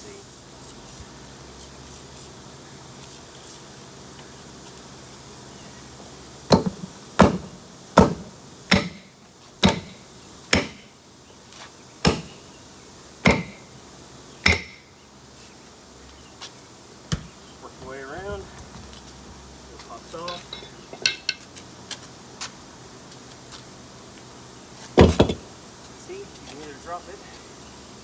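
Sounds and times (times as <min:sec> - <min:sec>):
hammer striking tire: 0:06.5 - 0:10.9, 0:12.0 - 0:12.5, 0:13.2 - 0:13.6, 0:14.4 - 0:14.8, 0:25.0 - 0:25.5.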